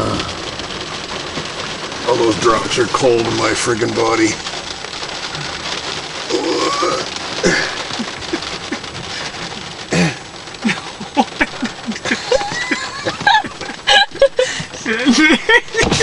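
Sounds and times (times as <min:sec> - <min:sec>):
rain pattering: 0:00.0 - 0:16.0
person giggling: 0:07.4 - 0:08.9, 0:10.0 - 0:16.0.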